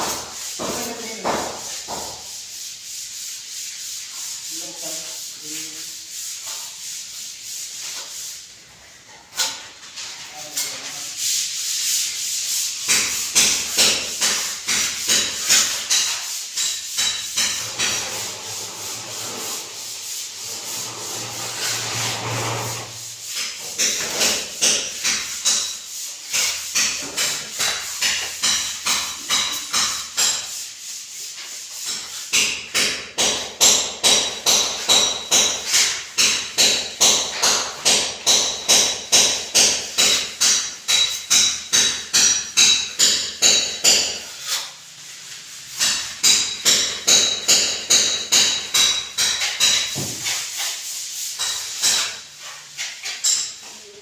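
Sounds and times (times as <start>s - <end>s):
hand tool rasping on hard surface: 10.3s - 32.5s.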